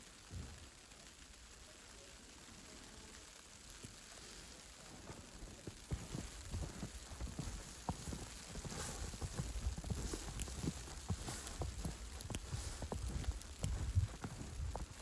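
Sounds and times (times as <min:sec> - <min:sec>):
footsteps crunching in snow: 0:04.9 - 0:15.0.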